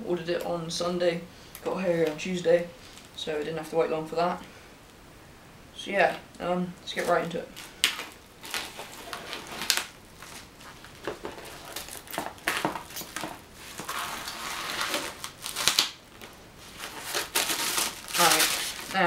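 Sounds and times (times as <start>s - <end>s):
cardboard and packing rustling: 6.9s - 19.0s.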